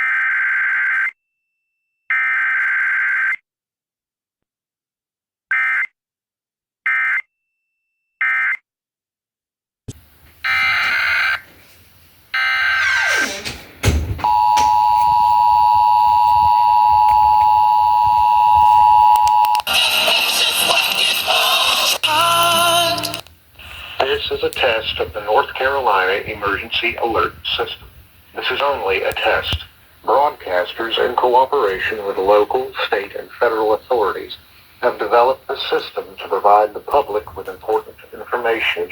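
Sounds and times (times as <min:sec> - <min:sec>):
radio station audio: 0:12.6 - 0:38.9
steady two-tone attention signal: 0:14.2 - 0:19.7
radio static: 0:14.2 - 0:38.9.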